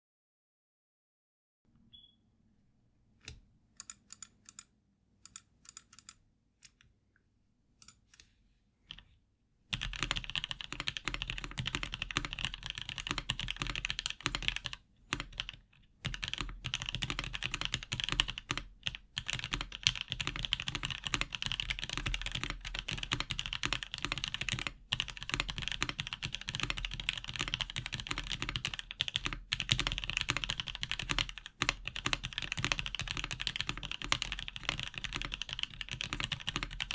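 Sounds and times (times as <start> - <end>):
typing on mechanical keyboard: 3.8 - 4.7, 5.3 - 6.2, 9.7 - 36.9.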